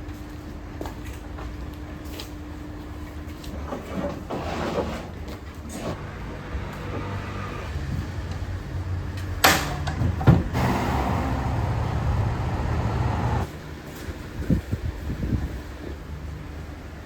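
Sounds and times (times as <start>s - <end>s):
low motor hum: 10.5s - 13.5s.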